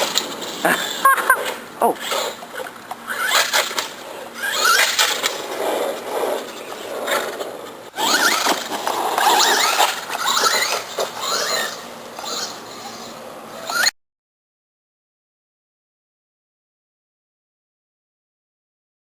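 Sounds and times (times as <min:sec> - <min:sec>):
electric motor whining: 0:00.0 - 0:13.9.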